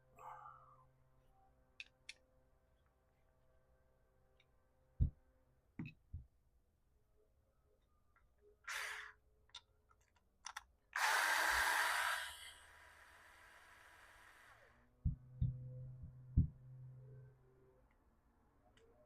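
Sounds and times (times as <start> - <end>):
low hum: 14.8 - 18.9.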